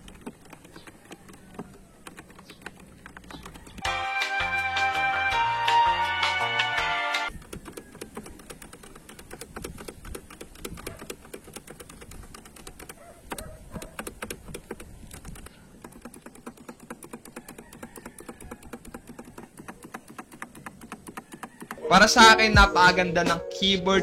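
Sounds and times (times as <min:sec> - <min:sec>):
mechanical keyboard typing: 0:00.0 - 0:03.9, 0:07.3 - 0:22.3.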